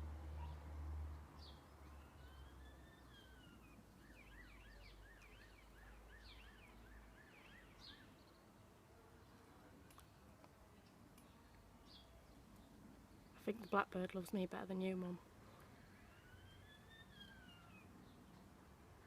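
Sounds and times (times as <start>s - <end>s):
bird song mimicking a siren: 1.4s - 8.4s, 15.8s - 18.2s.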